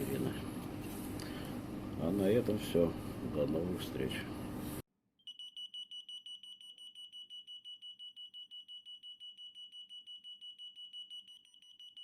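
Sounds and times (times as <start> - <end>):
fire alarm sounder beeping: 5.2 - 12.0.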